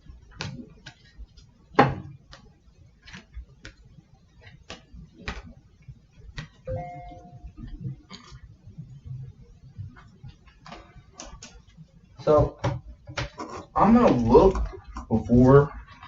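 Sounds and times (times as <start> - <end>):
short two-tone beep: 6.7 - 7.5.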